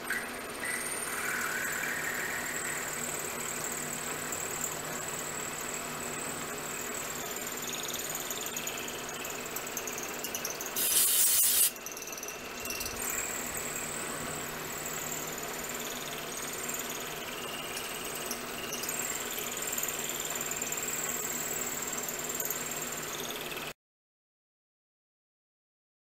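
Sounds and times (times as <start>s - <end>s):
milling machine whining: 0.0s - 23.7s
loud hiss: 10.8s - 11.7s.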